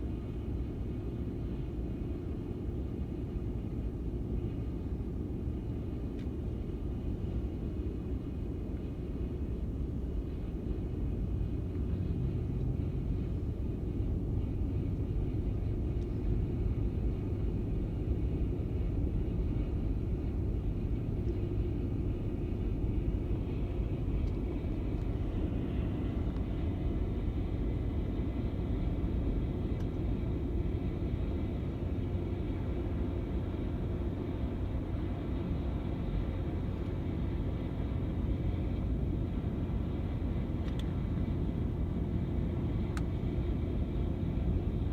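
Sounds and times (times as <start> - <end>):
skid steer engine rumble: 10.2 - 44.9.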